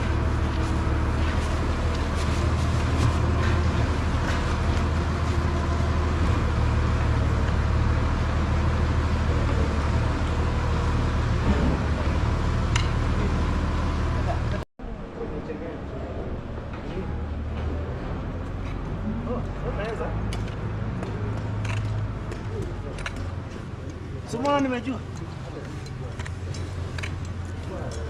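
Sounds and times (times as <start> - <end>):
heavy machinery humming: 0.0 - 28.0.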